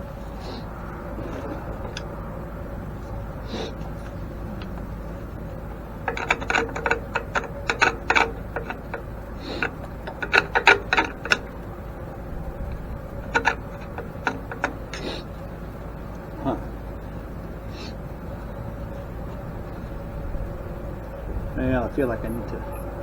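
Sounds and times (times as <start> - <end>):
tools clicking and clinking: 3.7 - 11.7, 12.7 - 15.4.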